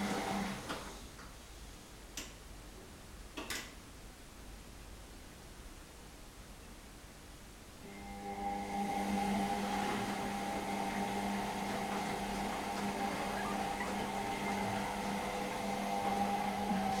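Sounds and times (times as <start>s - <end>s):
washing machine running: 0.0s - 0.9s, 7.8s - 17.0s.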